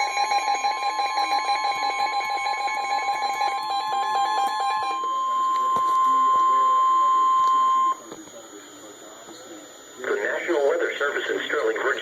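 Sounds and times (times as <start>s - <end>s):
steady alarm tone: 0.0s - 8.1s
radio receiver alarm beeping: 0.0s - 8.2s.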